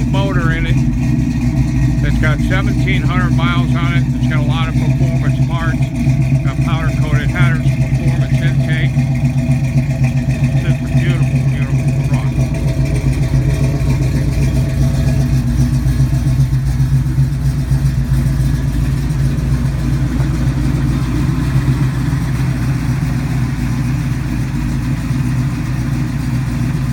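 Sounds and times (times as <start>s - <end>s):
car engine idling: 0.0s - 26.9s.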